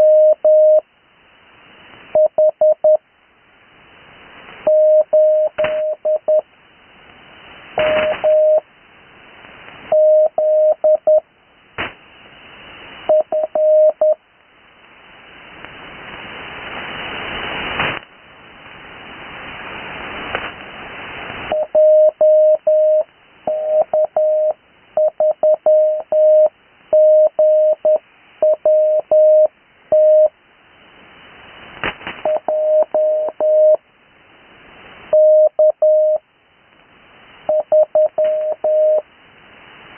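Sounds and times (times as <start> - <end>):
morse code tone: 0.0 - 0.8, 2.2 - 3.0, 4.7 - 6.4, 7.8 - 8.6, 9.9 - 11.2, 13.1 - 14.2, 21.5 - 30.3, 32.3 - 33.8, 35.1 - 36.2, 37.5 - 39.0
static crackles: 0.0 - 39.9
radio band hiss: 1.0 - 25.0.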